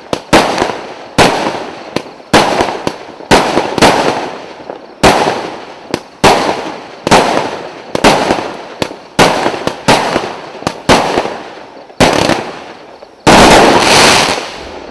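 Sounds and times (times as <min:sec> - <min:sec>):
firework shots banging: 0:13.2 - 0:14.9.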